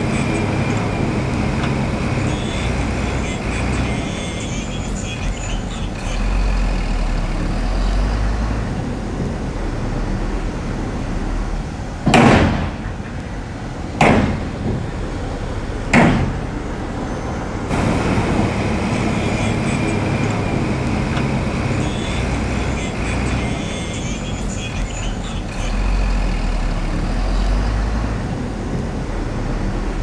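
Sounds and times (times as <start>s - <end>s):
diesel machinery running: 0.0s - 30.0s
loud bangs: 12.0s - 15.3s, 15.9s - 16.9s, 17.7s - 27.6s.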